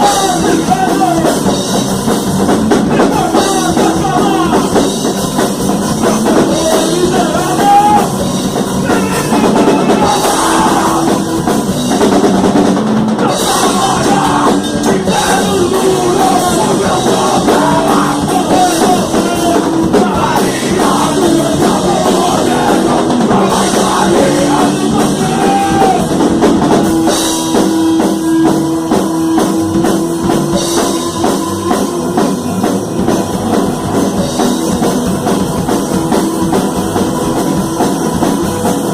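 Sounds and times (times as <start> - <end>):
person singing: 0.0 - 1.5, 2.9 - 4.8, 6.2 - 11.5, 13.2 - 26.2
drum kit beat: 0.0 - 38.9
loud guitars and bass: 0.0 - 38.9.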